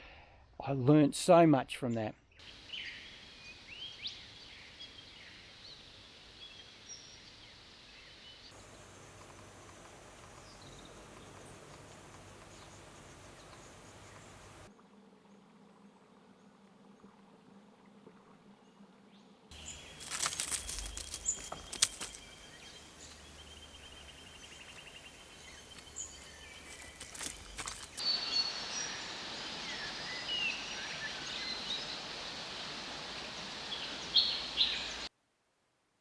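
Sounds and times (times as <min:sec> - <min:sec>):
bird trill: 0:08.6 - 0:14.7, 0:19.6 - 0:31.9
birds chirping and whistling: 0:08.6 - 0:14.7, 0:19.6 - 0:32.0.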